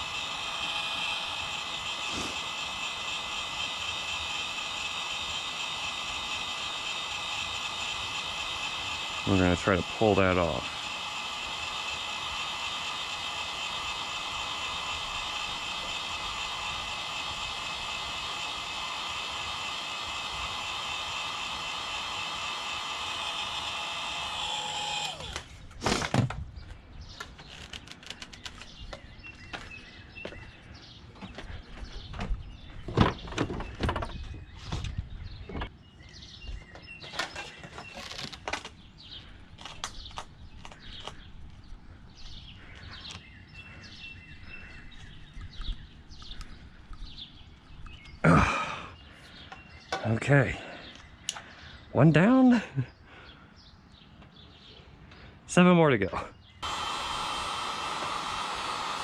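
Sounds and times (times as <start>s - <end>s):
heat gun running: 0.0s - 25.6s, 56.6s - 59.0s
birds chirping: 0.0s - 59.0s.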